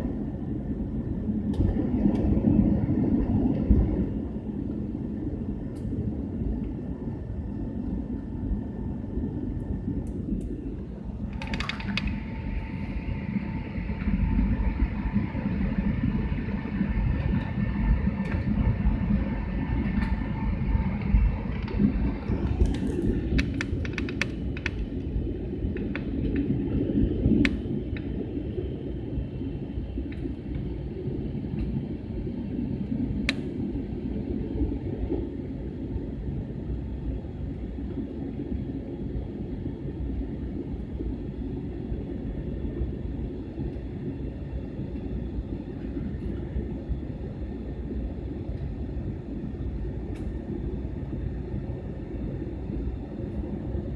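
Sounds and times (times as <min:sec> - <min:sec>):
airliner cabin engine rumble: 0:00.0 - 0:53.9
faint steady whine: 0:00.0 - 0:53.9.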